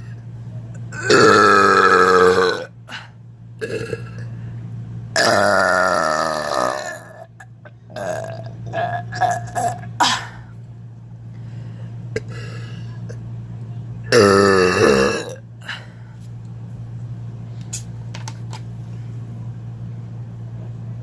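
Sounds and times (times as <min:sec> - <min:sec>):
woman burping: 0:01.0 - 0:02.7, 0:05.2 - 0:07.3, 0:07.9 - 0:10.4, 0:14.1 - 0:15.4.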